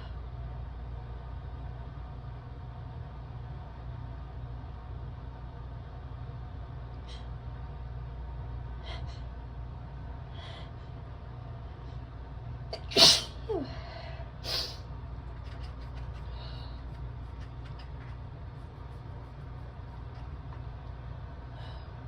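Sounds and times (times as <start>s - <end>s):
steady low hum: 0.0s - 22.0s
person sneezing: 12.8s - 13.7s.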